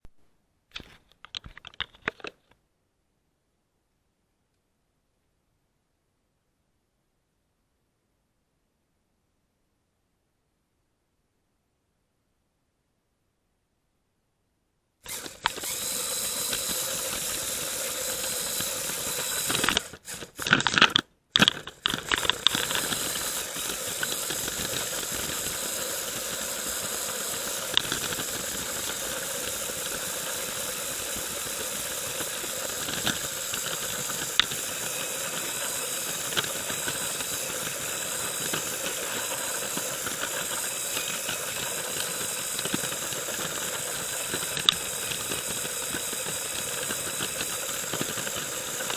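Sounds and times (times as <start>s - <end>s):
sharp clicks: 15.0s - 48.9s
toy train motor whirring: 15.0s - 48.9s.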